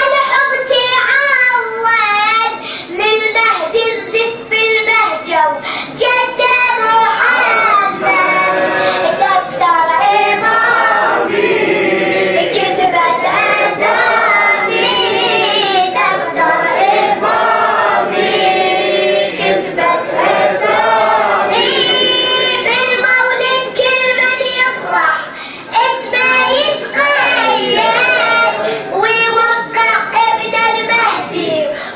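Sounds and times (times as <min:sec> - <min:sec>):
chorus of voices singing: 0:06.8 - 0:23.4, 0:25.8 - 0:29.0.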